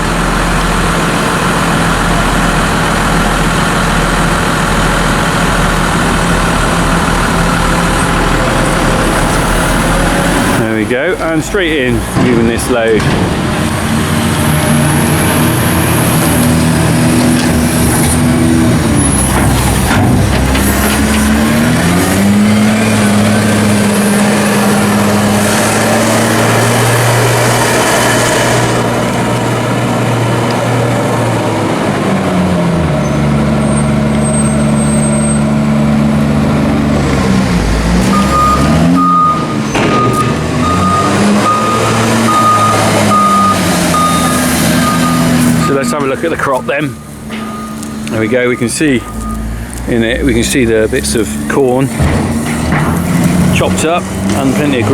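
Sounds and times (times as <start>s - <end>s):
heavy farm machine engine revving: 0.0s - 54.9s
reversing alarm beeping: 38.1s - 49.7s.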